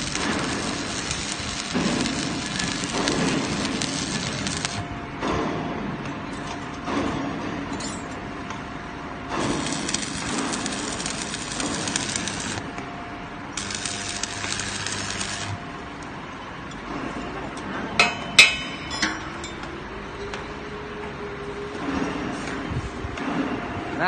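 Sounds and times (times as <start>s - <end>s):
arc welding crackling: 0.0s - 4.8s, 9.3s - 12.7s, 13.6s - 16.2s.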